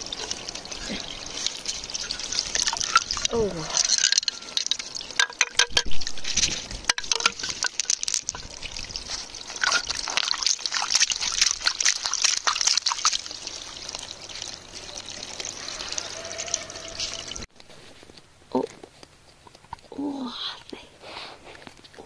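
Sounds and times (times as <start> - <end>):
water trickling and splashing: 0.0 - 17.6
sharp clicks and knocks: 4.0 - 8.5.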